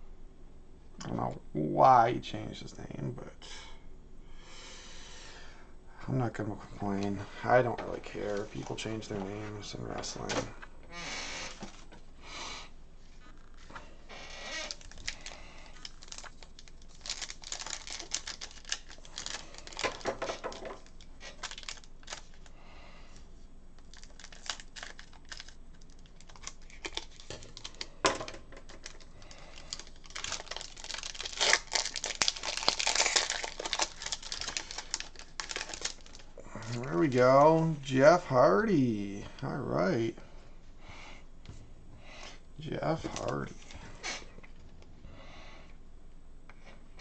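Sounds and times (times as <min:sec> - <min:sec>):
card crinkling: 0:06.8 - 0:10.3, 0:14.6 - 0:22.5, 0:23.8 - 0:38.8, 0:42.8 - 0:43.8.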